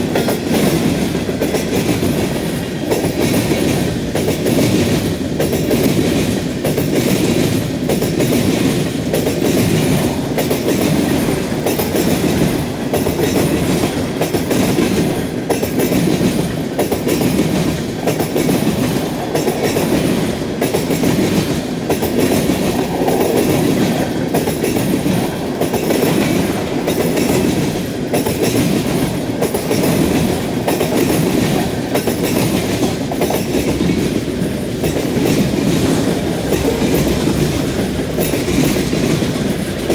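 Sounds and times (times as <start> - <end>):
train wheels clicking on rail joints: 0.0 - 39.9
freight cars rumbling past: 33.5 - 39.9.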